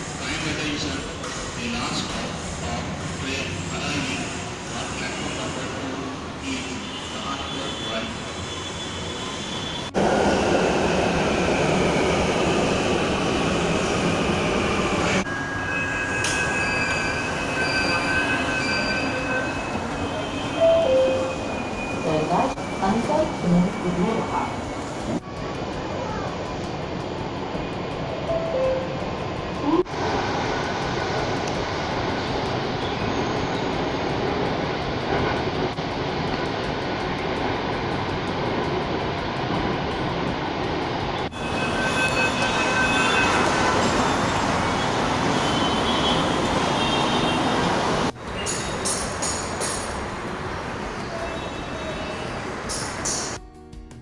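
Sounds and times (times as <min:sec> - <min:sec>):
train wheels rumbling: 0:00.0 - 0:53.4
high-pitched whine: 0:08.4 - 0:25.2, 0:41.2 - 0:47.3.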